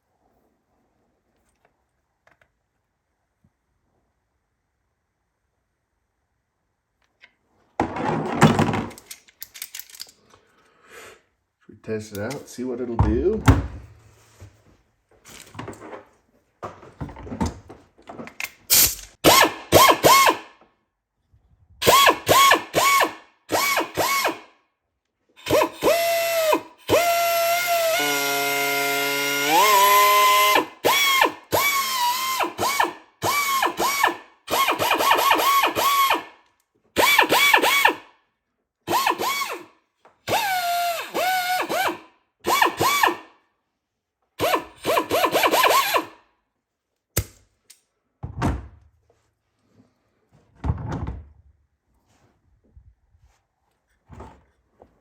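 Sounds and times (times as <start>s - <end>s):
pneumatic belt sander whining: 25.4s - 36.3s, 37.0s - 38.0s, 38.9s - 39.6s, 40.2s - 43.2s, 44.4s - 46.1s.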